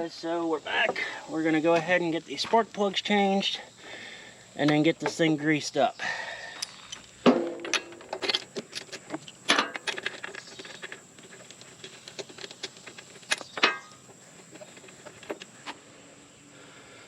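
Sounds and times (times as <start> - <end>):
metal tools clanking: 6.5 - 15.5
metal hand tools clinking: 7.7 - 15.4.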